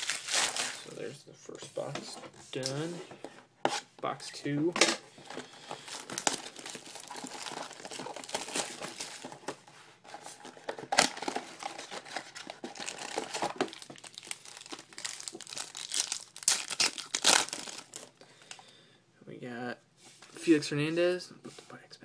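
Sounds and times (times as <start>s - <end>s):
wrappers crinkling and tearing: 0.0s - 1.0s, 5.8s - 9.4s, 10.8s - 18.2s.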